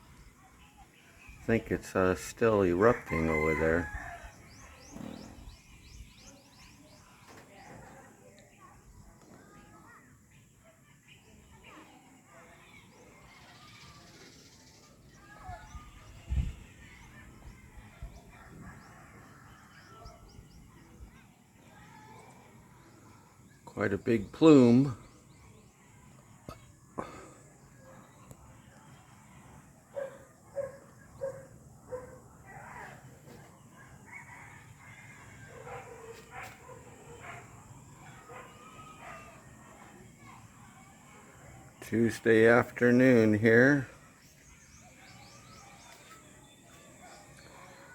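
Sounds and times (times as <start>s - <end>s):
birds chirping: 0.0s - 47.9s
bumps on microphone: 4.8s - 5.6s
faint dog barking: 29.9s - 40.8s.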